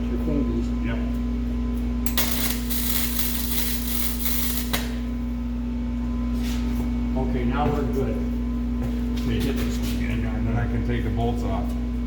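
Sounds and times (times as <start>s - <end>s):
steady electrical hum: 0.0s - 12.0s
welding arc crackling: 2.1s - 5.1s.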